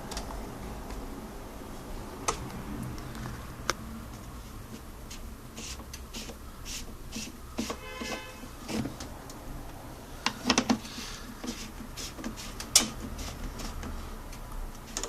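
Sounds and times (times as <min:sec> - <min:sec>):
short bursts of hissing: 0:05.2 - 0:07.8.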